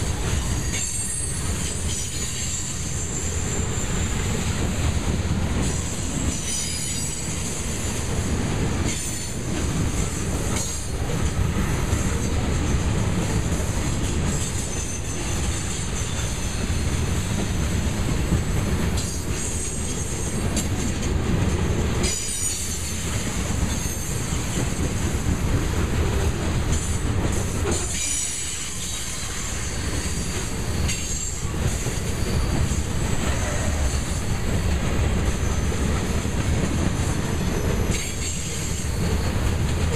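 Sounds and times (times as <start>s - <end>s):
freight train rumbling past: 0.0s - 39.9s
high wheel squeal: 0.4s - 4.5s, 5.7s - 8.0s, 27.8s - 34.4s.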